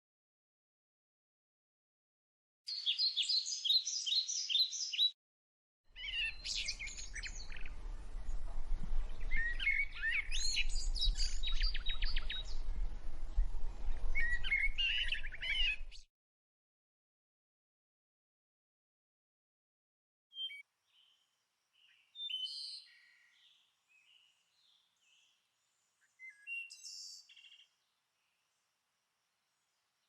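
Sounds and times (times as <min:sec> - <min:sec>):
low rumble: 0:07.3 - 0:16.0.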